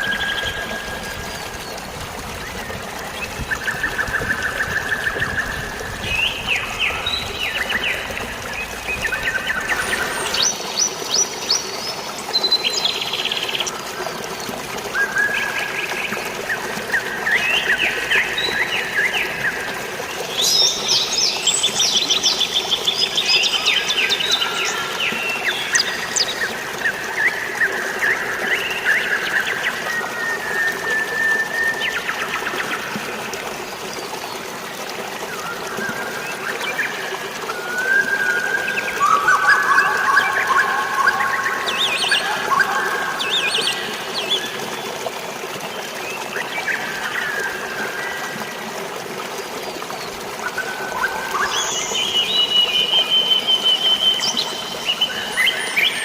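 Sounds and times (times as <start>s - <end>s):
birds chirping and trilling: 0.0s - 33.0s
flowing water: 0.0s - 56.0s.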